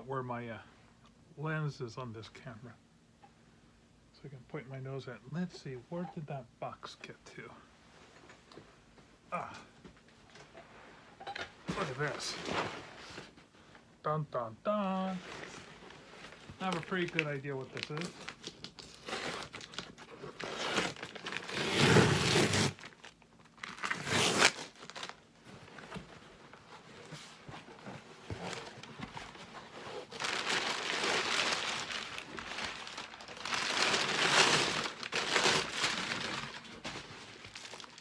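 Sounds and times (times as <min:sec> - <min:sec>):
packaging crinkling and tearing: 0:16.2 - 0:26.0, 0:28.3 - 0:38.0.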